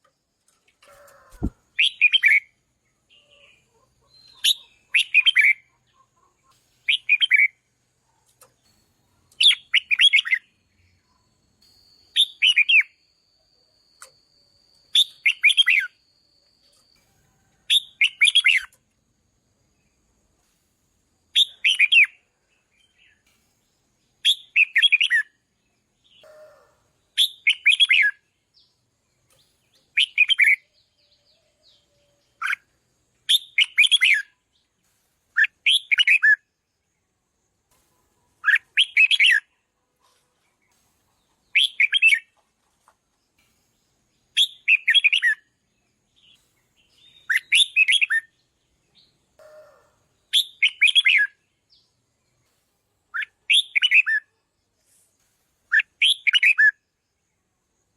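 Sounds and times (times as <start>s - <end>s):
fainter lower bird call: 26.0s - 28.7s, 41.3s - 42.4s, 46.3s - 51.9s.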